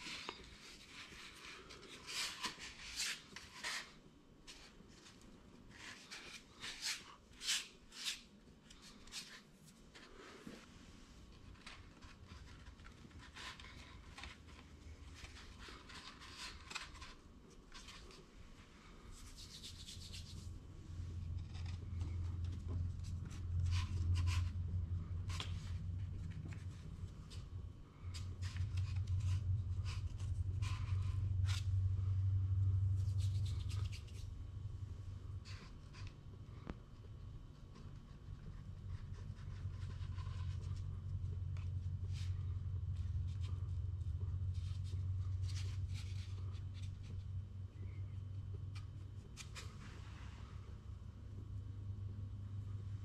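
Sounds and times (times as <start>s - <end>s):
rubbing and scraping: 0.0s - 32.1s, 32.8s - 36.7s, 37.4s - 47.9s
low rubbing rumble: 19.8s - 35.8s.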